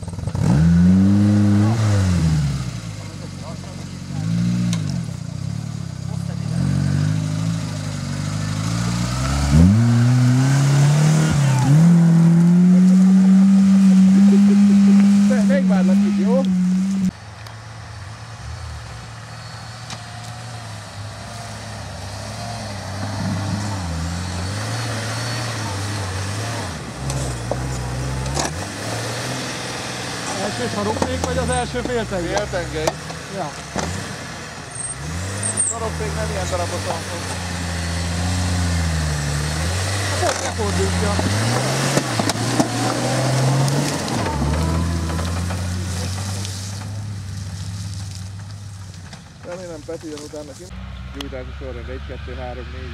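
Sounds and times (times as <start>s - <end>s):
vehicle engine running: 0.0s - 52.9s
crackling hiss: 42.2s - 51.1s.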